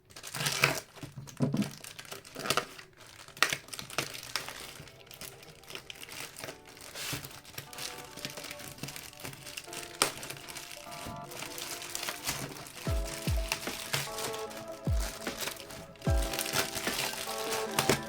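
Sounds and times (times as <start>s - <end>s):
plastic packaging crinkling: 0.0s - 18.0s
plastic packaging tearing: 0.0s - 18.0s.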